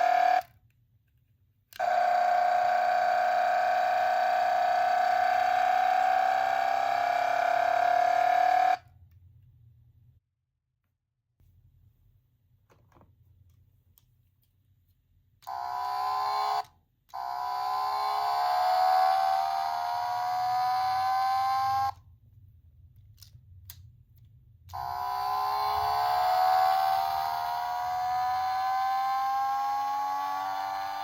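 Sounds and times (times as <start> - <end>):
toy car sound effect tone: 0.0 - 0.6, 1.8 - 9.0, 15.4 - 22.0, 24.7 - 31.0.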